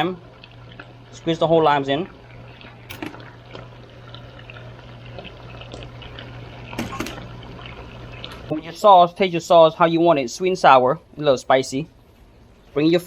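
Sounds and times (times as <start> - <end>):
juice dripping into a pan: 0.0 - 8.5.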